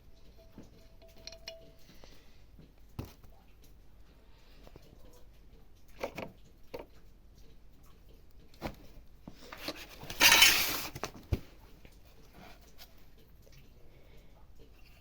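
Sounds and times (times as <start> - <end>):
hard objects clinking: 10.0 - 11.0.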